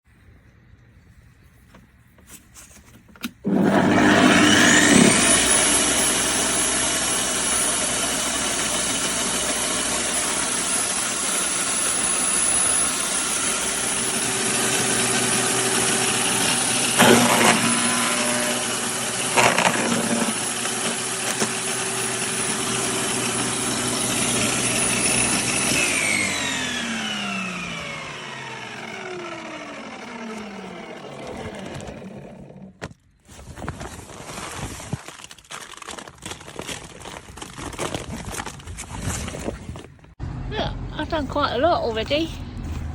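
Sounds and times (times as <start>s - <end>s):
wood chipper motor whine: 3.4s - 34.4s.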